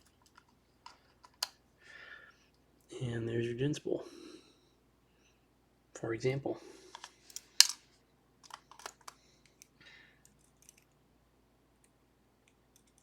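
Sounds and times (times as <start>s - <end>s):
small metal lock parts clicking: 0.0s - 1.6s, 7.0s - 7.8s, 8.4s - 11.0s, 12.5s - 13.0s.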